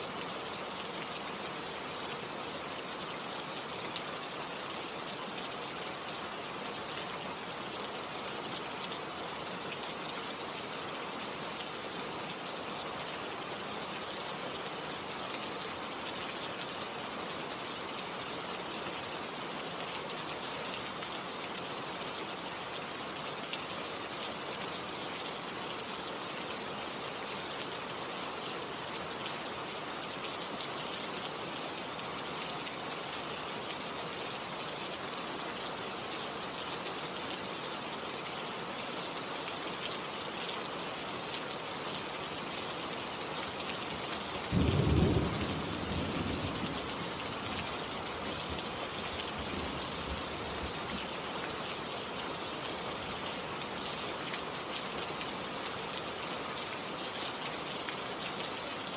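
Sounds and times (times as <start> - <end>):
rain hissing: 43.4 - 53.7.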